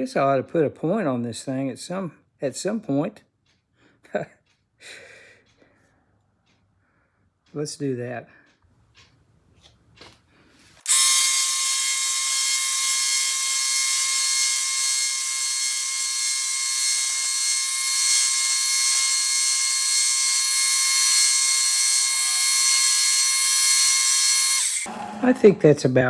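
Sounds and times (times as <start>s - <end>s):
belt sander grinding steel: 10.8s - 25.4s.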